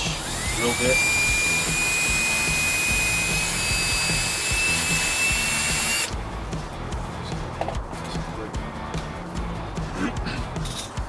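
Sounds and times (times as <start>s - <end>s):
electric drill whining: 0.0s - 6.2s.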